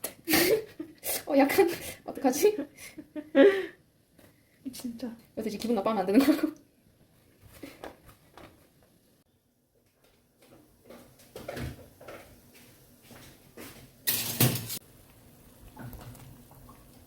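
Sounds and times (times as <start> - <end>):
utensils and cookware knocking: 14.1 - 14.8.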